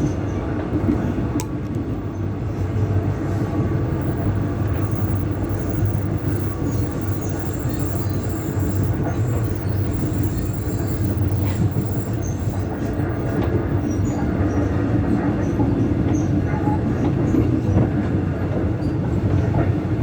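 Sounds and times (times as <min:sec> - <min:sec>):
train rolling rumble: 0:00.0 - 0:20.0
train traction motor sound: 0:01.4 - 0:14.6
high squeals: 0:02.6 - 0:14.3.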